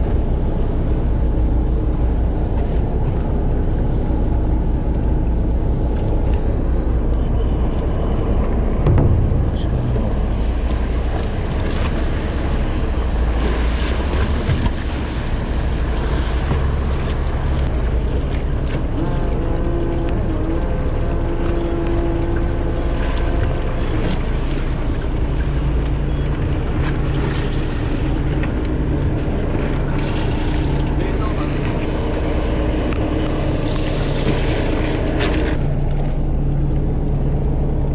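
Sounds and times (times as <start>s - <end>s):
boat engine running: 0.3s - 37.9s
wind buffeting microphone: 8.9s - 13.1s.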